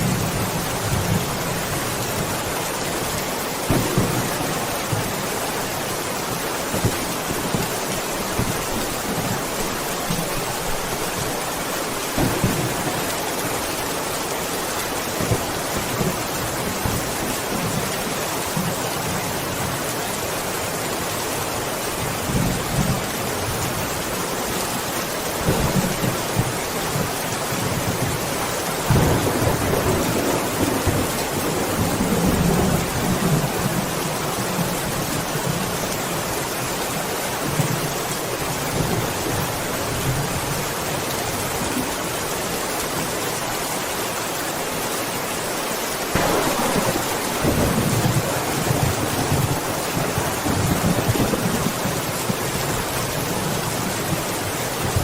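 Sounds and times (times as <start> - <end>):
heavy rain hissing: 0.0 - 55.0
thunder rumbling: 3.6 - 14.1, 46.1 - 54.2.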